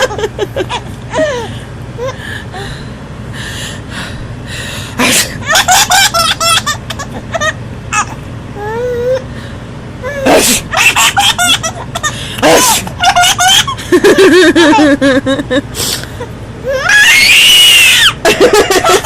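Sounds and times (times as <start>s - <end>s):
person sneezing: 5.0s - 5.4s, 10.2s - 10.7s, 12.3s - 12.9s
high-pitched laughter: 10.7s - 15.7s, 16.7s - 19.0s.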